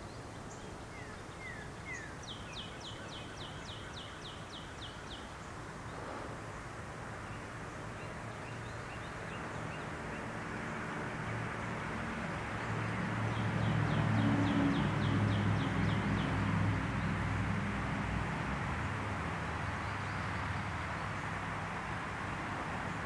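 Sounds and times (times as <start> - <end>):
small birds chirping: 0.0 - 10.4.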